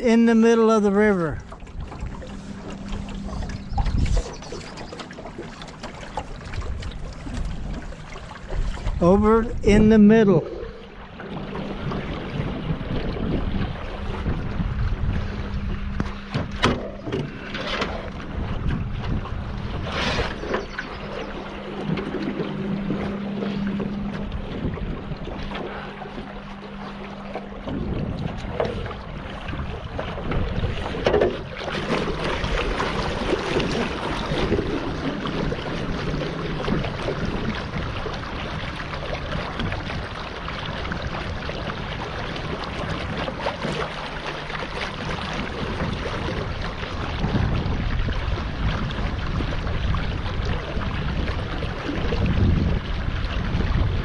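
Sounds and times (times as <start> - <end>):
water splashing along hull: 0.0 - 54.0
wind noise on microphone: 1.6 - 4.7, 11.3 - 21.2, 24.0 - 25.8, 27.6 - 43.8, 45.0 - 54.0.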